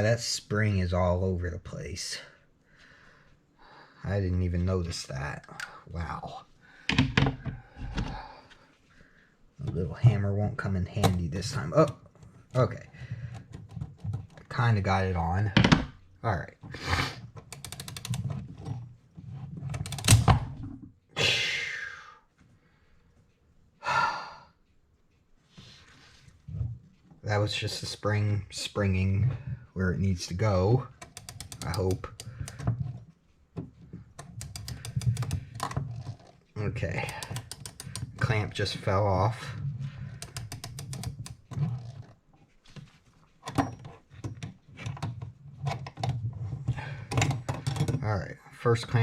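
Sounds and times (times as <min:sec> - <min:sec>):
rattling clicks: 0:17.4 - 0:18.8, 0:19.5 - 0:20.8, 0:30.7 - 0:42.2
breathy sighs: 0:23.8 - 0:24.6.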